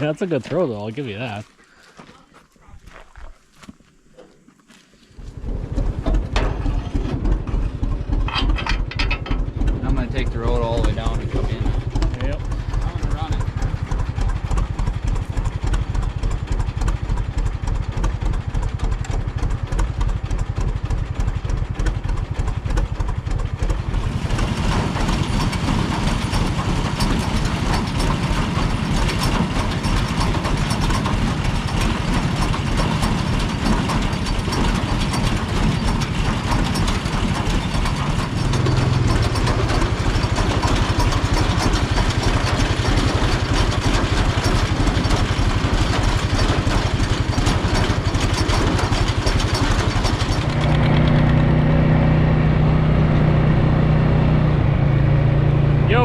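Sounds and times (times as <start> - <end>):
steady low hum: 0.0 - 17.3
engine running: 0.0 - 56.0.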